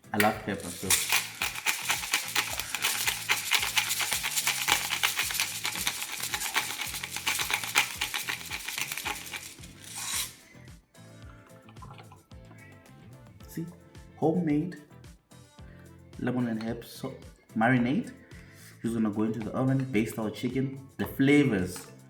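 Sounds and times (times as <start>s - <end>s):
pepper mill grinding: 0.0s - 10.5s
background music: 0.0s - 22.0s.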